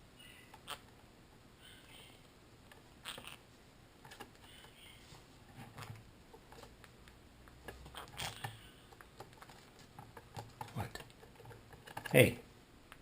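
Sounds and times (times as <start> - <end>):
parrot chirps: 0.2 - 0.9, 3.0 - 3.4, 7.9 - 8.9.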